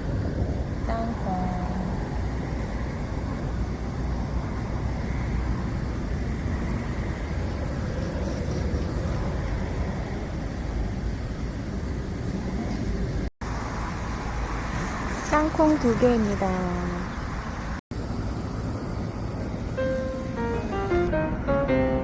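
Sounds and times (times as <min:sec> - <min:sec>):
low rumble with hiss: 0:00.0 - 0:22.0.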